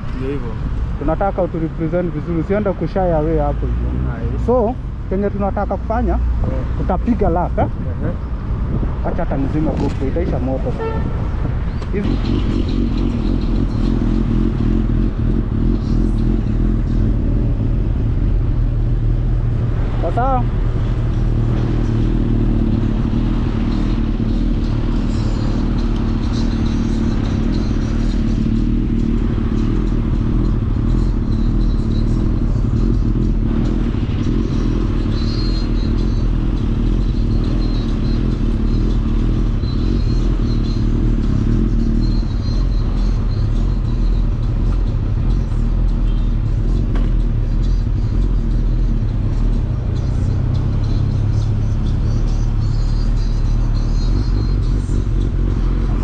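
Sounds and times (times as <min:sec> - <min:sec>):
motorcycle engine idling: 0:12.0 - 0:56.0.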